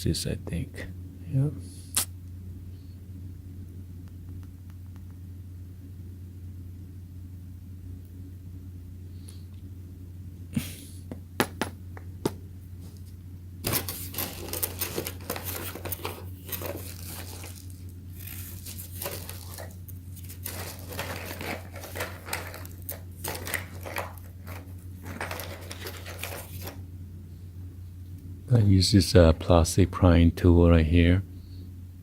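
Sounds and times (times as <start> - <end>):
low electrical hum: 0.0 - 32.0
small parts scraping and clattering: 13.6 - 26.8.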